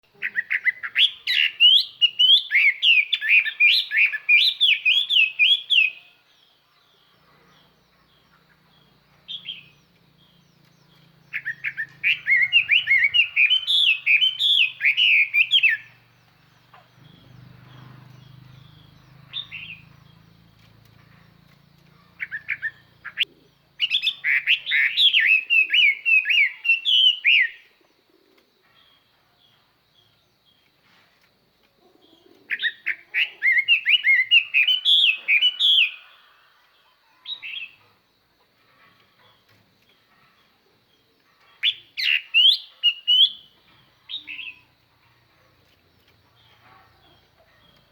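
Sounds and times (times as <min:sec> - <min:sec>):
bird singing whistled phrases: 0:00.2 - 0:06.2, 0:11.3 - 0:16.0, 0:22.2 - 0:27.7, 0:32.5 - 0:36.1, 0:41.6 - 0:43.6.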